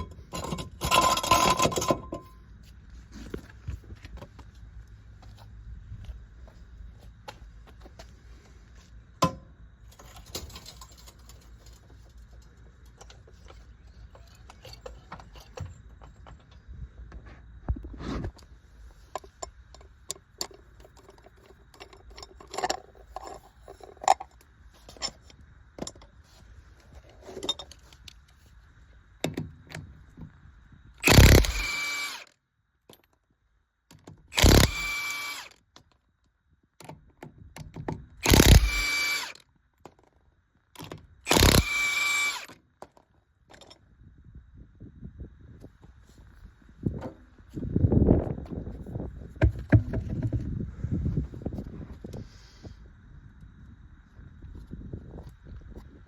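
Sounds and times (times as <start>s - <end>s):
hand tools clicking and clanking: 0.0s - 2.4s
handheld power tool whining: 31.0s - 32.3s, 34.3s - 35.6s, 38.2s - 39.4s, 41.3s - 42.6s.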